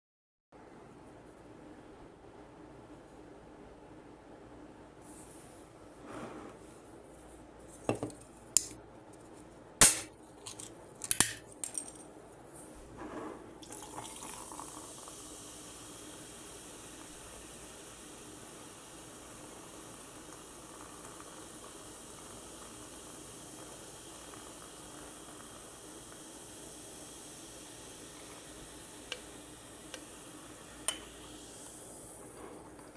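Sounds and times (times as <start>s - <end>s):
soda fizzing in glass: 13.6s - 32.9s.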